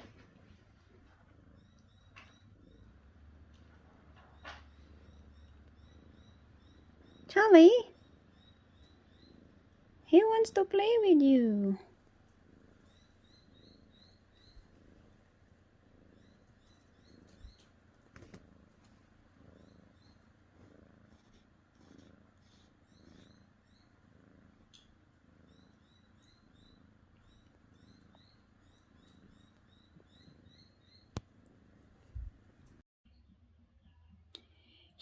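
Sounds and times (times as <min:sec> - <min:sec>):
cat purring: 0:00.0 - 0:35.0.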